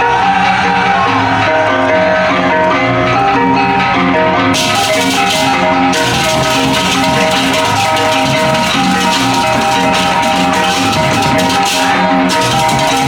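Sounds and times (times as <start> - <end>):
gongs ringing: 2.5 - 13.0
cymbals crashing: 4.5 - 13.0
drum strokes: 4.6 - 13.0.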